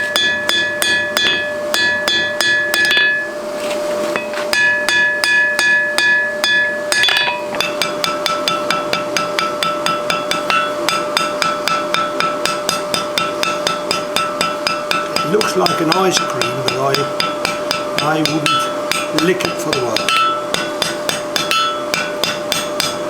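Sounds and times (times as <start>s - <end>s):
hammer striking steel on anvil: 0.0s - 3.4s, 4.2s - 23.0s.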